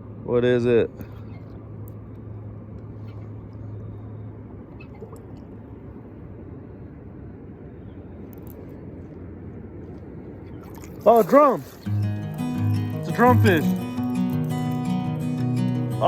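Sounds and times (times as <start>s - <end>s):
water rushing at a spillway: 10.6s - 11.9s.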